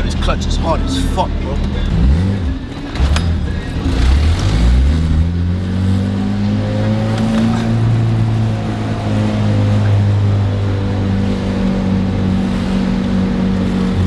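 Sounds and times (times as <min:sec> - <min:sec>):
car engine droning: 0:00.0 - 0:14.0.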